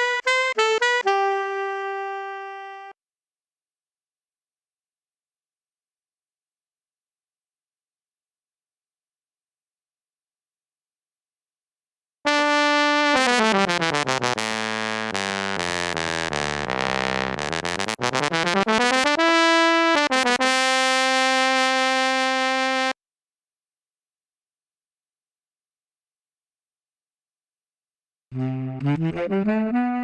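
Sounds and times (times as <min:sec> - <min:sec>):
sampled brass instrument notes: 0:00.0 - 0:02.9, 0:12.3 - 0:23.0.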